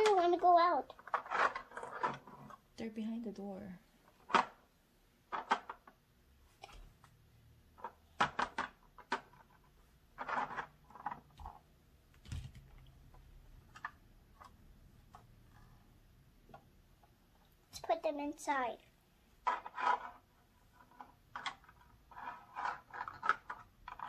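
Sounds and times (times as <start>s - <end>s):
plastic toy pieces clicking: 0.0s - 2.2s, 21.0s - 24.0s.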